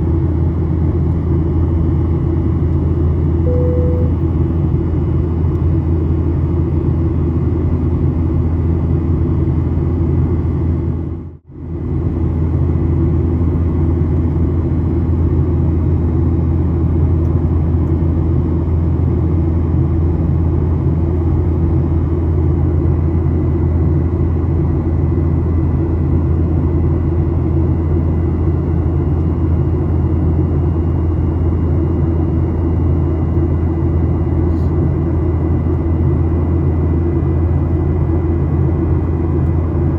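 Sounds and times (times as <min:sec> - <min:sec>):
airplane cabin engine rumble: 0:00.0 - 0:39.9
faint steady tones: 0:03.4 - 0:04.3.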